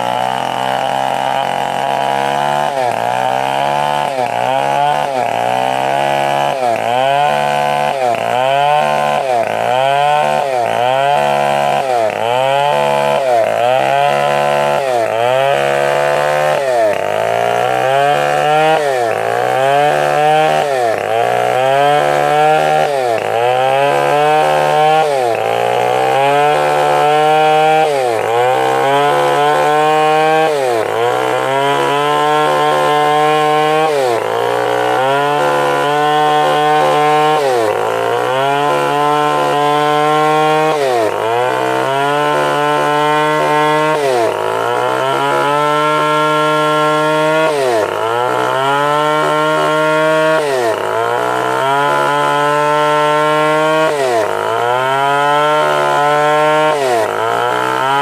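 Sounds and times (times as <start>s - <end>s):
chainsaw cutting wood: 0.0s - 58.0s.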